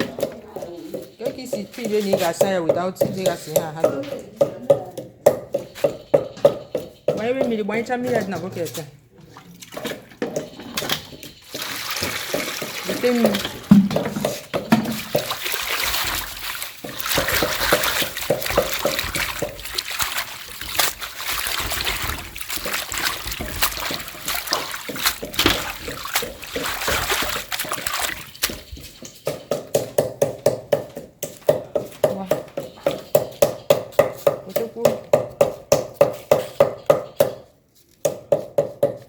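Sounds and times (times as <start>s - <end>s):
hands splashing in water: 11.5s - 29.0s.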